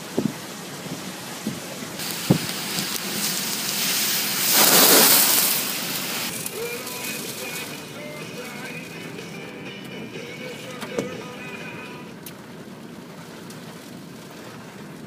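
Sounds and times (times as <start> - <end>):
storm waves breaking: 0.0 - 7.9
wind and surf rushing: 0.1 - 6.4.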